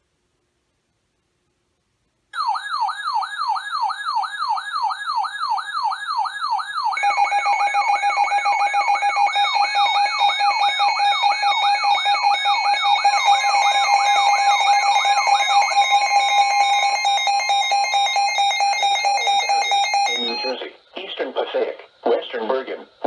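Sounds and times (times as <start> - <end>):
electronic wailing alert: 2.4 - 20.6
steady alert tones: 2.4 - 20.7.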